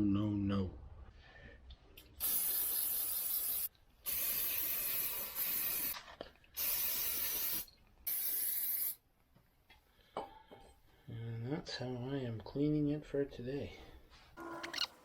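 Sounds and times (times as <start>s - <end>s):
pressurized spray hissing: 2.2s - 6.0s.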